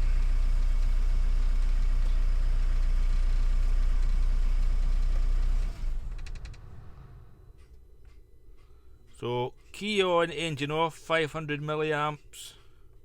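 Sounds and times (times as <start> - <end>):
diesel engine idling: 0.0 - 7.4
engine switched off running down: 0.0 - 7.4.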